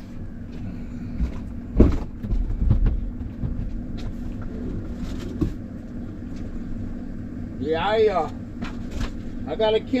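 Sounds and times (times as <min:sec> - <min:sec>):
low rumble with hum: 0:00.0 - 0:10.0
heavy thump: 0:01.7 - 0:03.6.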